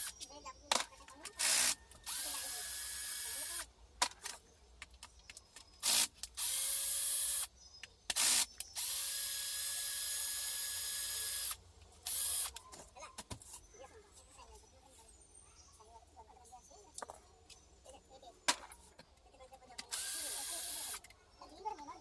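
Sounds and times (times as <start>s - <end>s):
power drill whirring: 1.4s - 3.6s, 5.8s - 7.5s, 8.1s - 12.6s, 19.9s - 21.0s.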